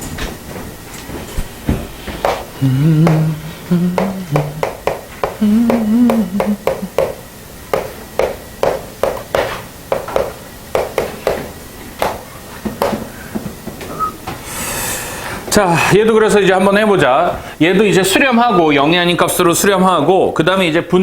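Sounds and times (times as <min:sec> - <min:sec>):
person humming: 0:02.2 - 0:07.2.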